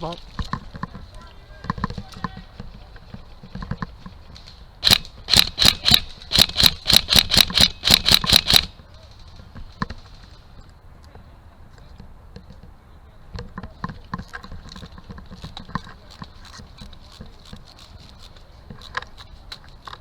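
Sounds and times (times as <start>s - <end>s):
airsoft gun shots: 4.8s - 8.7s.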